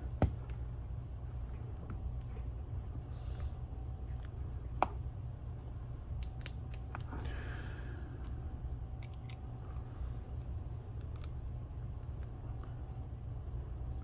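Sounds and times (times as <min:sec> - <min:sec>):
steady low hum: 0:00.0 - 0:14.0
faint small clicks: 0:09.0 - 0:12.7.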